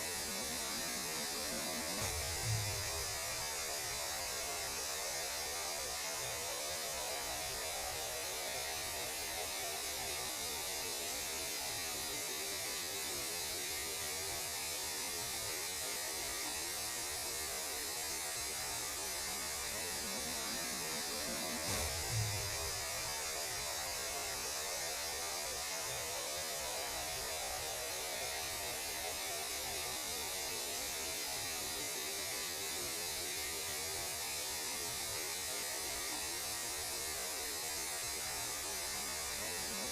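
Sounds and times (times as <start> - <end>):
hissing radio static: 0.0 - 3.4, 19.8 - 23.1
low hum: 1.4 - 3.4, 20.4 - 23.2
low thump: 2.0 - 3.0, 21.7 - 22.8.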